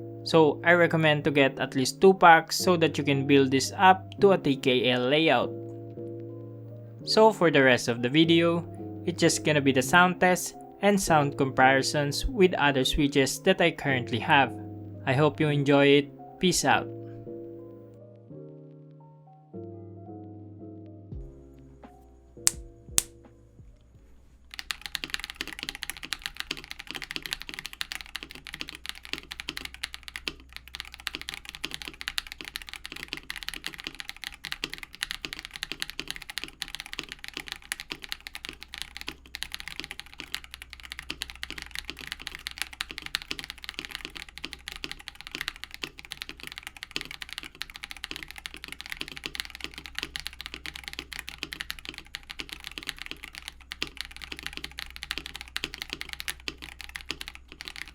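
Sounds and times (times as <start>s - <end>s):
fast mechanical keyboard typing: 24.5s - 57.9s.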